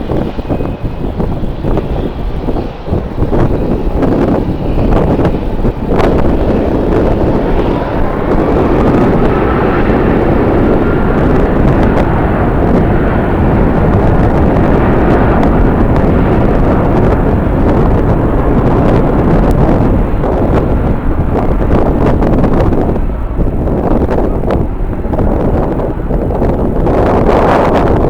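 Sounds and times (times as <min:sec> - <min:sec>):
jet engines running: 0:00.0 - 0:28.0
wind buffeting microphone: 0:00.0 - 0:28.0.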